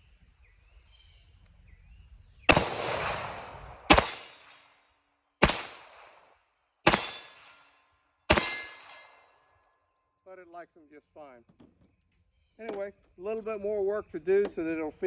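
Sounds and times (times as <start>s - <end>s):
pistol shots: 2.5s - 4.7s, 5.4s - 6.2s, 6.8s - 7.6s, 8.3s - 9.2s.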